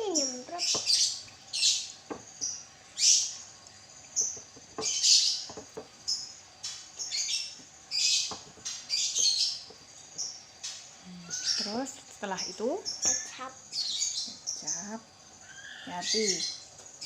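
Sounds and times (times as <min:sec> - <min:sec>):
light knocks: 0:02.1 - 0:02.6, 0:04.2 - 0:06.0.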